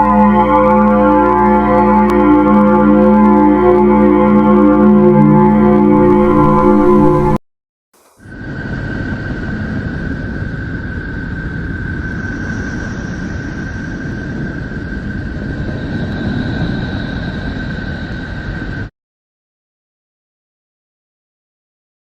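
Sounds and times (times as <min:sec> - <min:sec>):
high whistling tone: 0:00.0 - 0:07.4, 0:09.5 - 0:18.9
low rumbling drone: 0:00.0 - 0:07.4, 0:08.2 - 0:18.9.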